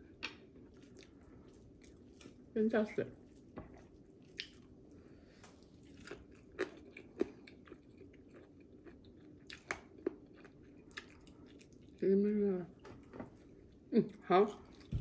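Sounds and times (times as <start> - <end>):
wet chewing mouth sounds: 3.2 - 4.7, 5.4 - 12.0.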